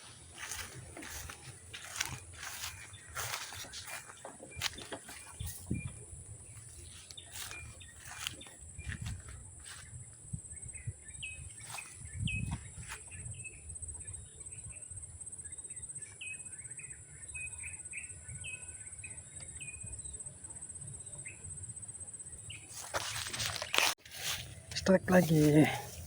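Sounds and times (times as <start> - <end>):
birds chirping: 0.0 - 14.8, 22.3 - 26.0.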